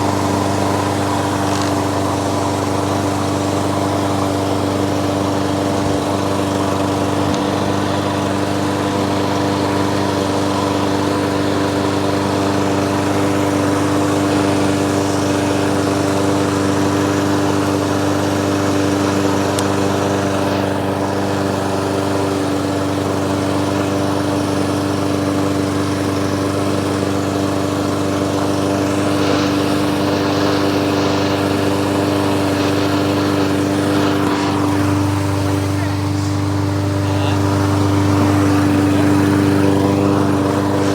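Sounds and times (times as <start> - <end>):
lawnmower engine running: 0.0 - 40.9.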